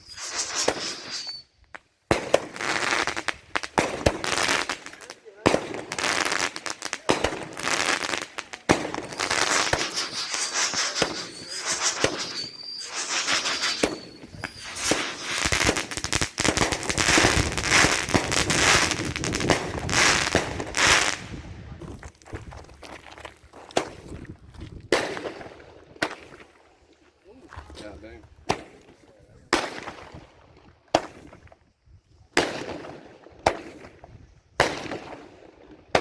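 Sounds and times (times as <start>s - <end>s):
fireworks bangs: 0.0s - 1.4s, 2.1s - 22.5s, 24.9s - 26.6s, 27.5s - 31.4s, 32.4s - 36.0s
high whistle: 0.0s - 1.6s, 9.2s - 15.9s
fireworks crackling: 0.0s - 24.2s.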